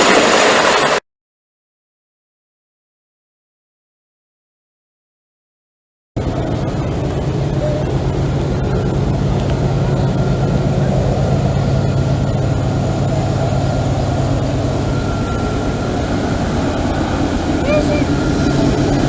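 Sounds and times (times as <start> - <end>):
diesel locomotive engine rumbling: 6.2 - 19.0.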